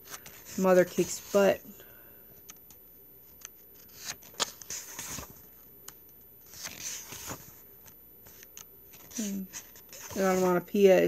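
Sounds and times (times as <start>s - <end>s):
book pages turning: 0.0s - 1.5s, 3.3s - 5.5s, 6.4s - 10.7s
paper rustling: 3.3s - 5.5s, 6.5s - 10.6s.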